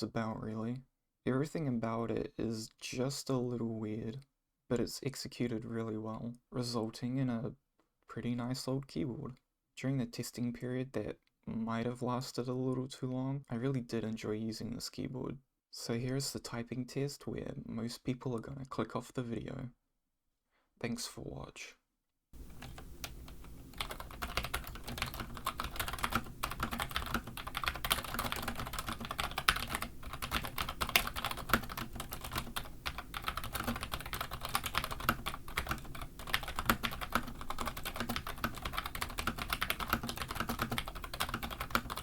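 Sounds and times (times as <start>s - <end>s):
fast keyboard typing: 22.4s - 42.0s.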